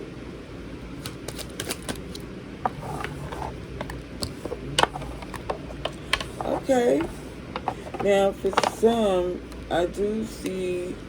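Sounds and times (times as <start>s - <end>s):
cards shuffling clicks and taps: 1.0s - 8.9s.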